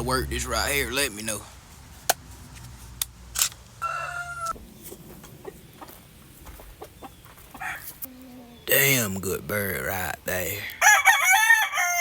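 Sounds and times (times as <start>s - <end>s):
rooster calling: 3.8s - 4.6s, 7.0s - 8.8s, 10.5s - 12.0s.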